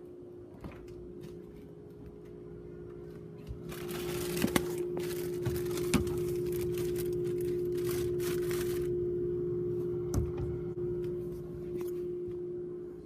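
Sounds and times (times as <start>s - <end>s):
steady hum: 0.0s - 13.0s
rustling and handling noise: 0.6s - 10.0s.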